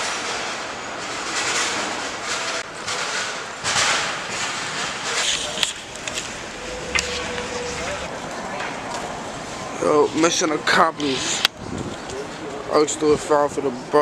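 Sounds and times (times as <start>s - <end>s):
city rushing noise: 4.1s - 9.6s.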